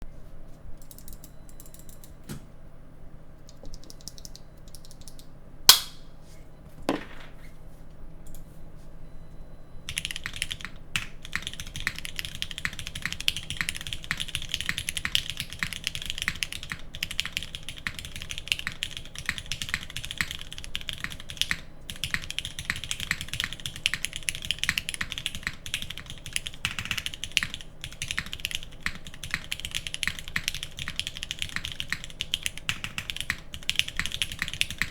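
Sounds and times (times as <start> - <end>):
typing on mechanical keyboard: 3.5 - 5.3, 9.9 - 34.9.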